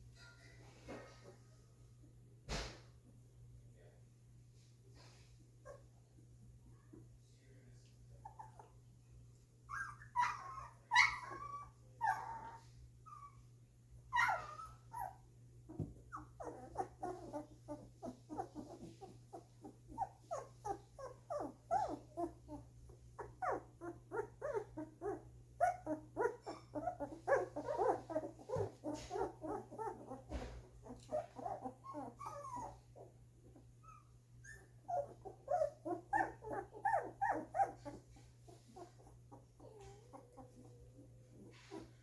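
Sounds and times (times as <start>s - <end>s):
puppies whimpering and squeaking: 9.7s - 13.5s, 14.1s - 42.0s.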